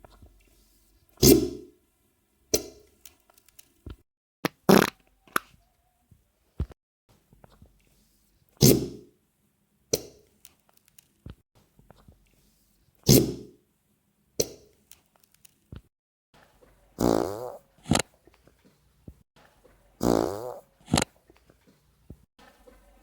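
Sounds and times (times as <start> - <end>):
wet sputtering farts: 4.6 - 5.0, 17.0 - 18.1, 20.0 - 21.1.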